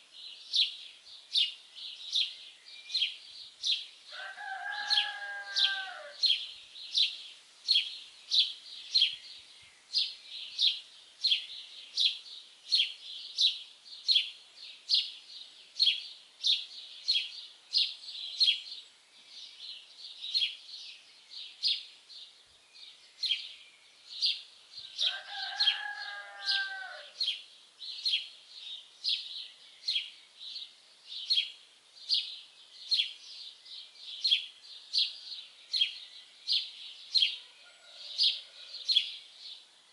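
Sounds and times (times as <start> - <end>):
songbird chirping: 0.0 - 39.9
rooster crowing: 4.1 - 6.2, 24.9 - 27.2, 37.4 - 38.9.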